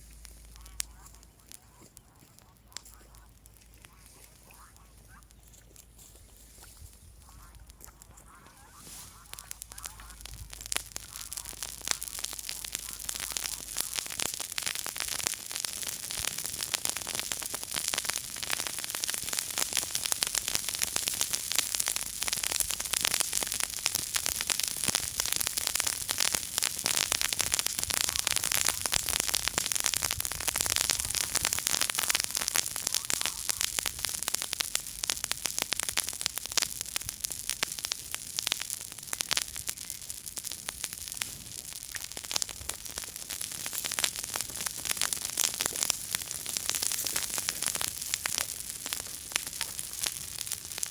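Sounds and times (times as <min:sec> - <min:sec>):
campfire crackling: 0:00.0 - 0:50.9.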